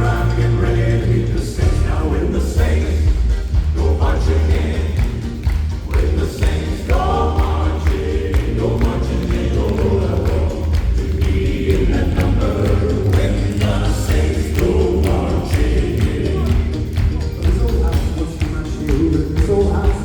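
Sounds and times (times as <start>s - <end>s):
gospel quartet singing in harmony: 0.0s - 20.0s
live band with heavy bass: 0.0s - 20.0s.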